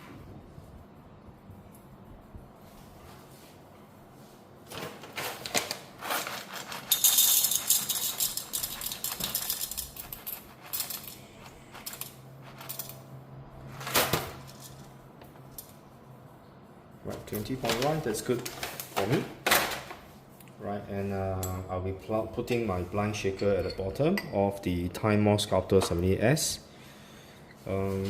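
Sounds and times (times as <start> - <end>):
coffee beans rattling into cup: 5.5 - 13.0.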